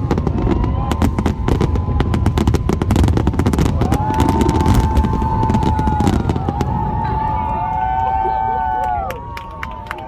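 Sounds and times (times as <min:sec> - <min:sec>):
fireworks crackling and banging: 0:00.0 - 0:09.8.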